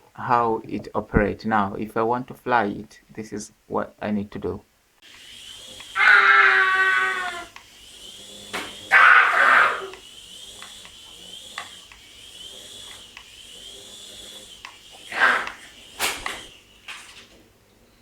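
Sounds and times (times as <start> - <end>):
toy helicopter rotor motor whine: 5.0 - 17.4.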